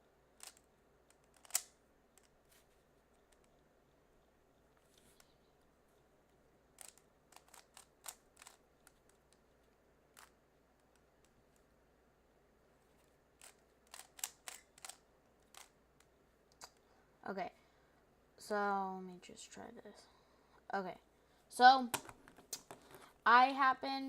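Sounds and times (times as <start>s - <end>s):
puzzle cube layers clicking: 0.4s - 2.4s, 6.7s - 9.5s, 10.1s - 11.7s, 13.4s - 16.8s.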